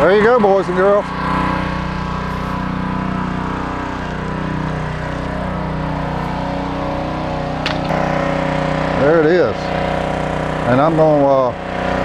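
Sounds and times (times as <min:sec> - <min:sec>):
pressure washer engine running: 0:00.0 - 0:12.0
water spray hissing: 0:01.5 - 0:07.9.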